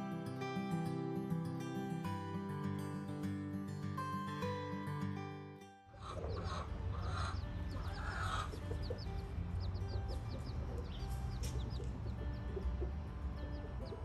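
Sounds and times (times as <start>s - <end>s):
chickens clucking: 6.0s - 14.0s
small birds chirping: 6.0s - 14.0s.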